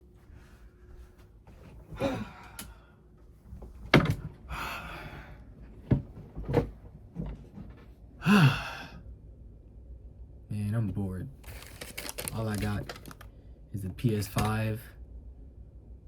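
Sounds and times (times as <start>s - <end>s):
man sighing and groaning: 1.9s - 2.9s, 4.5s - 5.4s, 8.2s - 9.0s.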